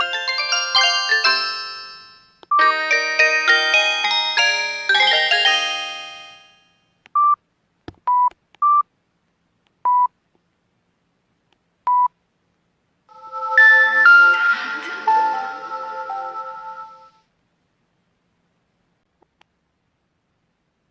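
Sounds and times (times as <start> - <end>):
mobile phone ringtone melody: 0.0 - 6.8, 13.1 - 17.2.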